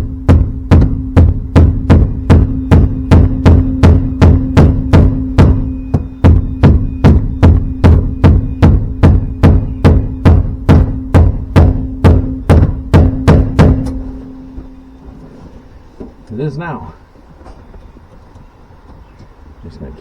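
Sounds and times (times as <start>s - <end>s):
music with percussive beat: 0.0s - 14.9s
held low note: 0.0s - 17.1s.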